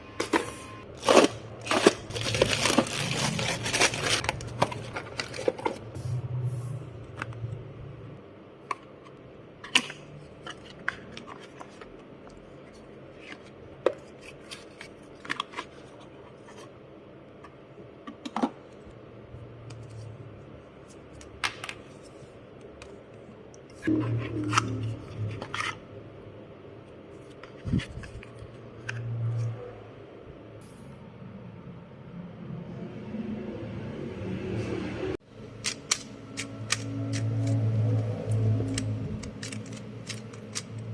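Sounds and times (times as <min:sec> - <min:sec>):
packaging crinkling and tearing: 0:01.0 - 0:05.9.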